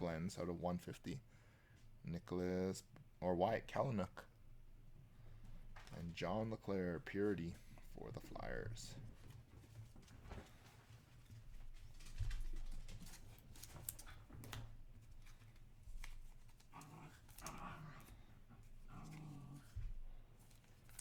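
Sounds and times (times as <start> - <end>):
dog making low sound: 16.8 - 18.2, 18.9 - 19.9.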